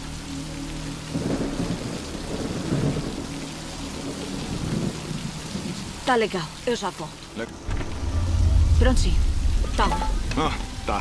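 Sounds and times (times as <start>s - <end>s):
heavy rain: 0.0s - 11.0s
thunder rumbling: 1.1s - 6.1s, 7.5s - 11.0s.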